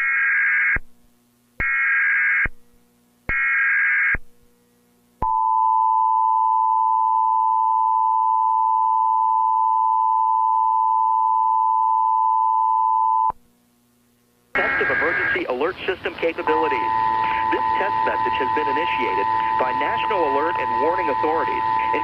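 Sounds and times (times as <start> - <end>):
screeching digital data tones: 14.6 - 22.0.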